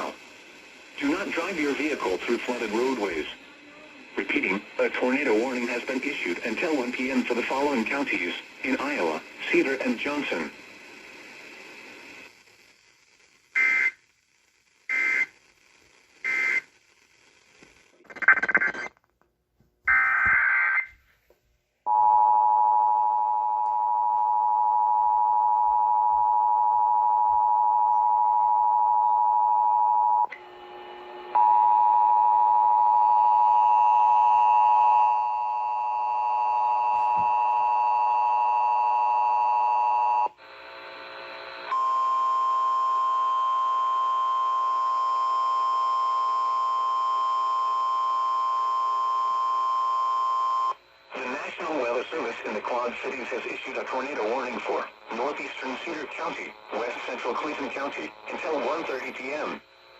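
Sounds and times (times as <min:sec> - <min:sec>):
digital data bursts: 0:18.1 - 0:18.9.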